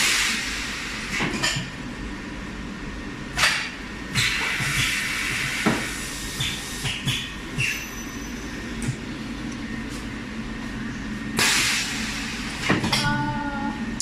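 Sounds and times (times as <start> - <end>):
compressed air blast: 3.4 - 7.2, 11.4 - 12.7
short air hisses and clicks: 3.4 - 7.7, 11.4 - 12.7
machine low hum: 7.2 - 14.0.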